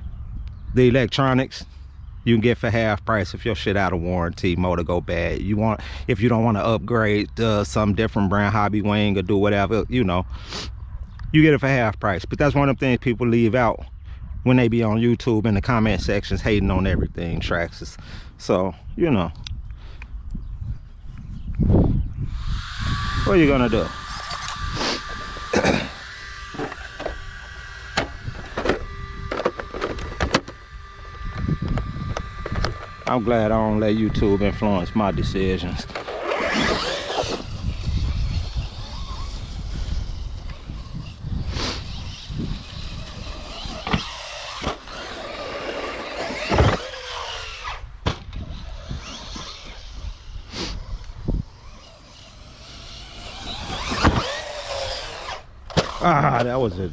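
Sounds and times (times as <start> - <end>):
electric motor whirring: 21.0 - 56.9.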